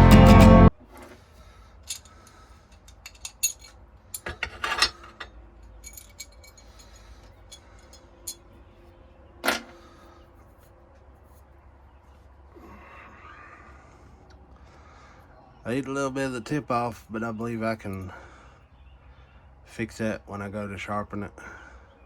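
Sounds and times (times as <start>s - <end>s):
guitar music: 0.0s - 0.7s
light metallic clinks and taps: 1.8s - 8.5s.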